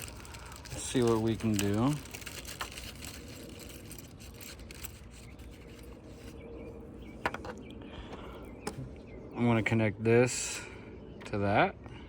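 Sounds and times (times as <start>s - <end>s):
light scraping and rubbing: 0.0s - 6.4s.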